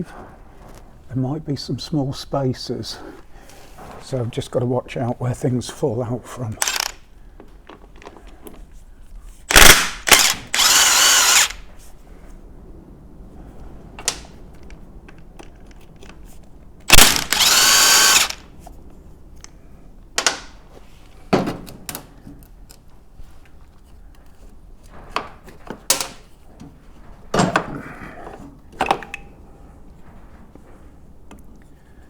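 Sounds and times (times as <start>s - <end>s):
power drill motor whine: 6.6s - 6.9s, 9.5s - 11.6s, 16.9s - 18.4s
tools clicking and knocking: 6.6s - 7.0s, 9.5s - 11.6s, 16.9s - 18.4s.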